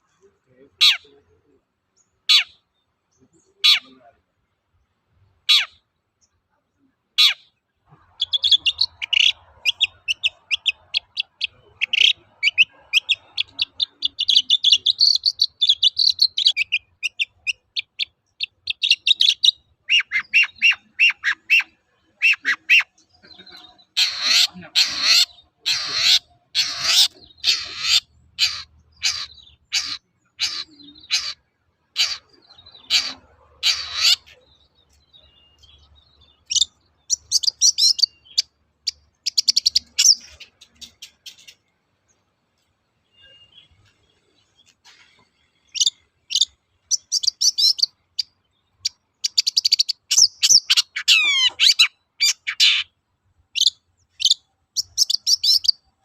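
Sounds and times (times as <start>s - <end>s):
shrike chirping song: 7.2s - 41.7s
shrike harsh rasping calls: 23.8s - 34.4s.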